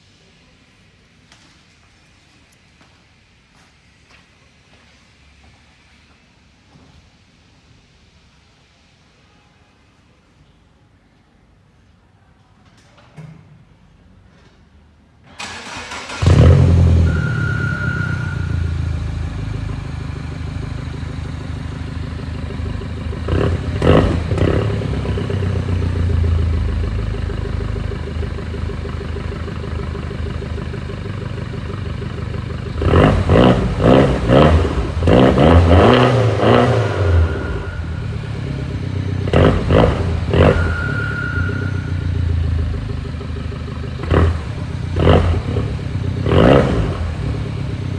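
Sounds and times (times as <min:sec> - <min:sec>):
car engine starting and idling: 0:15.2 - 0:47.9
engine revving: 0:15.4 - 0:28.7, 0:32.7 - 0:42.9, 0:43.9 - 0:47.9.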